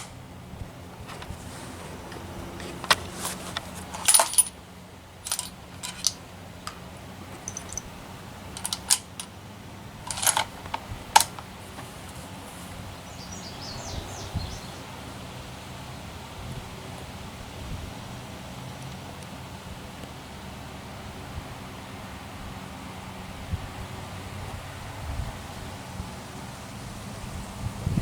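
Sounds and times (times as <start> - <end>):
rifle bolt metallic clicks: 7.4 - 7.9, 8.6 - 9.3, 10.1 - 11.5.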